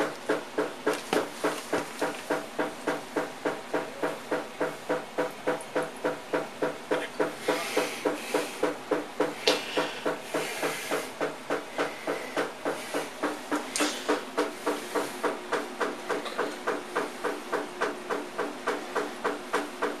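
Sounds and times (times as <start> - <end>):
washing machine chugging: 0.0 - 20.0
steady hiss: 6.9 - 15.4.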